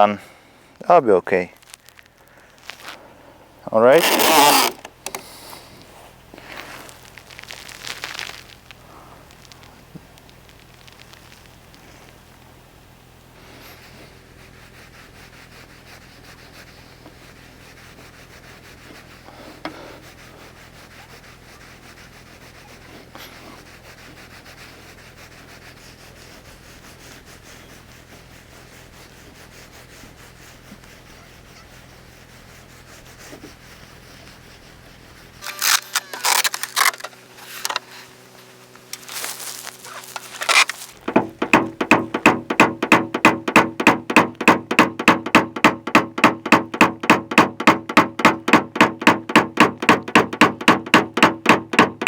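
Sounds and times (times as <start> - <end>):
tools rubbing and scraping metal: 3.8 - 5.3, 35.3 - 52.0.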